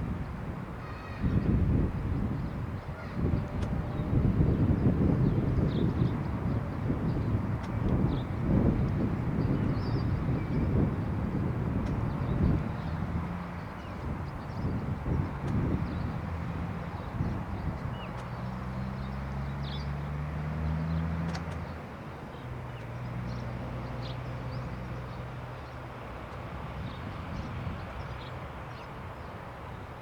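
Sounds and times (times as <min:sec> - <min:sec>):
low engine hum: 0:00.0 - 0:30.0
small birds chirping: 0:11.9 - 0:20.0.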